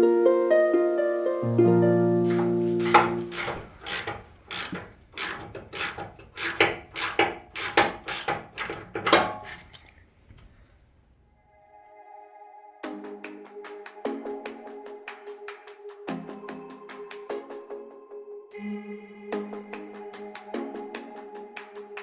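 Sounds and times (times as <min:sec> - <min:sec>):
plucked string music: 0:02.3 - 0:09.6
sharp knocks: 0:02.3 - 0:09.9.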